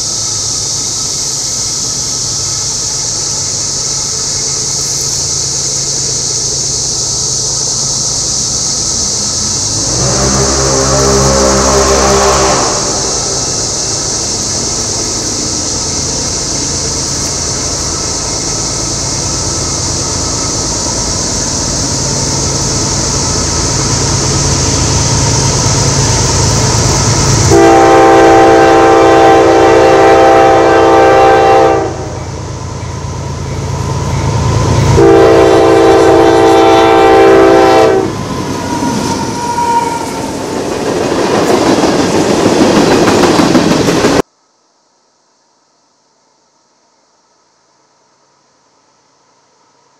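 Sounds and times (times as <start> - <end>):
train running: 0.0 - 44.3
train air horn blasts: 9.8 - 13.6, 25.4 - 32.3, 34.6 - 40.4.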